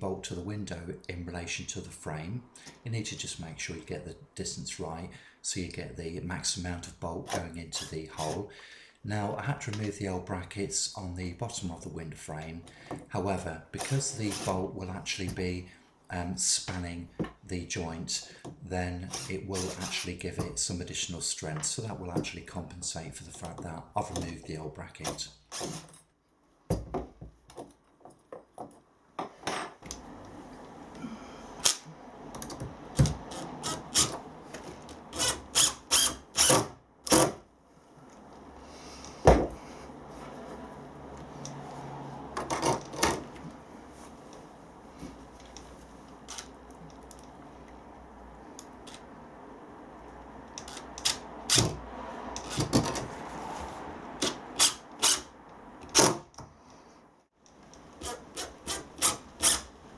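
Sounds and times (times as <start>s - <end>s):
faint background hum: 27.3s - 51.8s.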